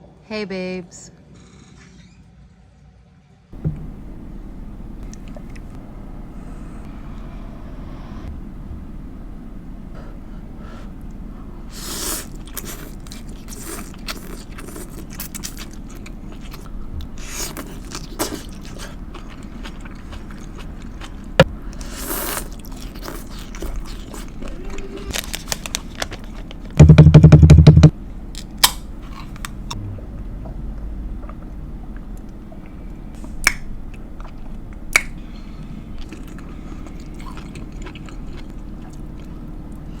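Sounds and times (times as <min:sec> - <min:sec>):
loud low buzzing: 0:03.6 - 0:11.7, 0:26.8 - 0:35.4
person chewing: 0:11.8 - 0:27.3, 0:35.9 - 0:39.8.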